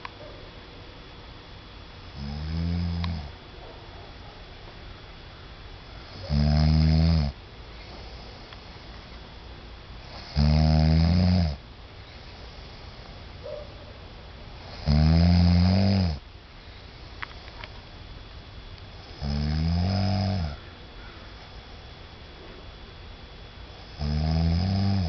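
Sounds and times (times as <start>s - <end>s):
man snoring: 2.1s - 3.3s, 6.1s - 7.4s, 10.0s - 11.6s, 14.6s - 16.2s, 19.0s - 20.6s, 23.8s - 25.0s.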